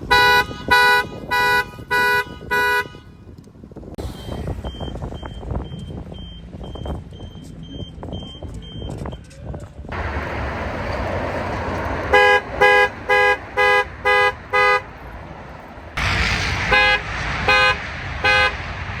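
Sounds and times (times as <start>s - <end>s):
car alarm horn honking: 0.0s - 3.1s, 12.0s - 15.1s, 16.0s - 18.6s
steady rushing noise: 9.9s - 19.0s.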